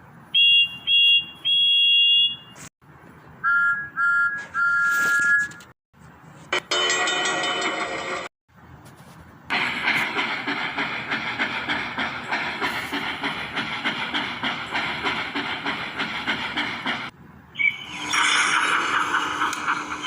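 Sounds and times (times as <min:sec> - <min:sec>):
steam locomotive rhythmic hissing: 0:09.5 - 0:20.0.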